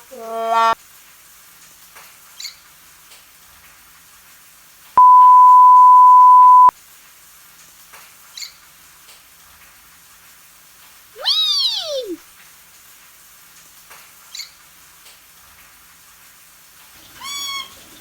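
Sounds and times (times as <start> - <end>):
electronic beep: 5.0 - 6.7
faint short high sounds: 11.2 - 12.2.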